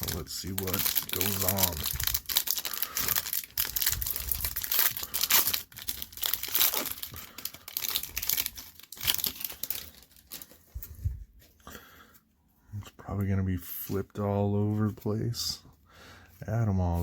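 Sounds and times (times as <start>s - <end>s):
card pack wrapper tearing: 0.0s - 10.6s.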